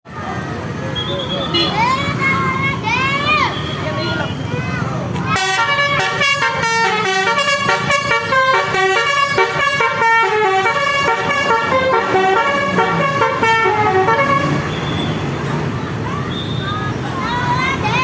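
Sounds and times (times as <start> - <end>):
multi-tone bus air horn melody: 5.3 - 15.3.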